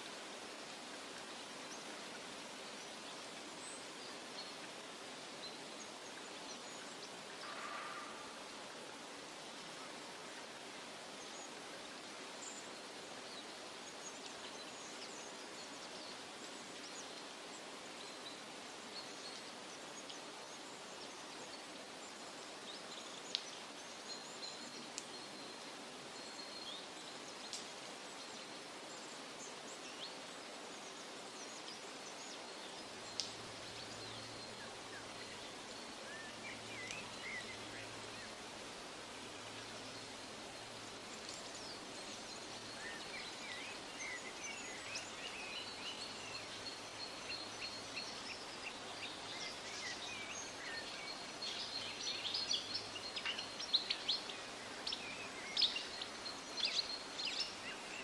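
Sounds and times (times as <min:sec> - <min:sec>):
steady forest hiss: 0:00.0 - 0:58.0.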